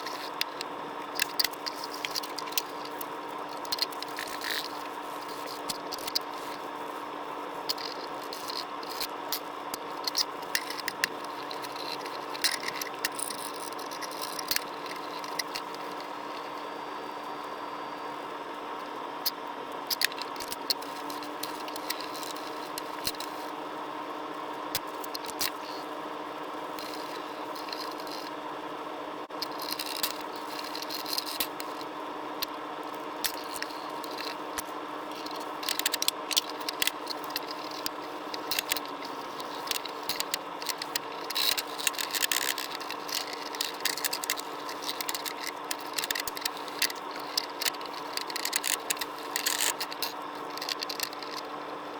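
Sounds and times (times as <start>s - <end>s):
hand work scrapes and rattles: 0.0s - 6.7s, 7.7s - 16.6s, 20.0s - 23.4s, 26.8s - 28.4s, 29.4s - 31.9s, 33.3s - 51.5s
steady electrical hum: 0.0s - 51.9s.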